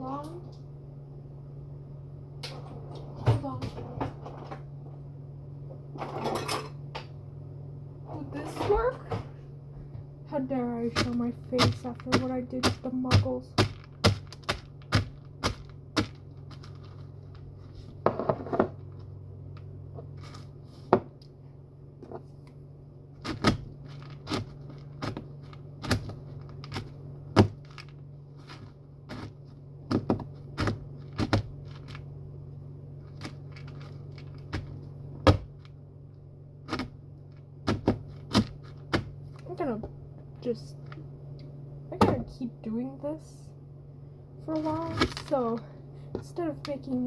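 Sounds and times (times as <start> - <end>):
cat food being pounded: 11.0 - 16.6, 29.9 - 31.9, 37.6 - 39.2.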